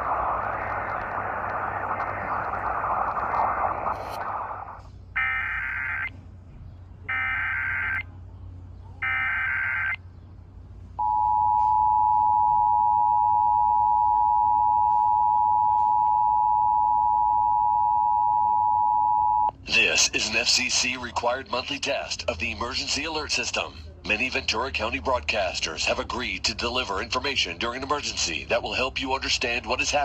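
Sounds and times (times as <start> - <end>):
two-tone attention signal: 11.0 - 19.5.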